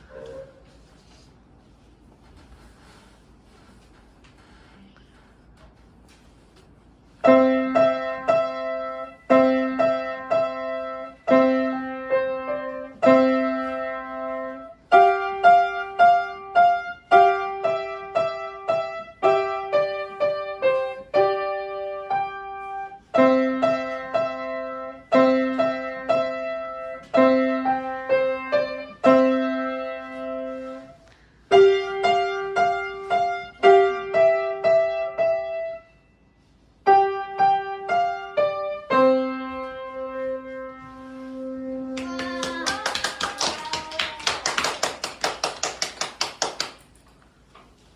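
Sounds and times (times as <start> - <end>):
piano melody: 7.2 - 42.6.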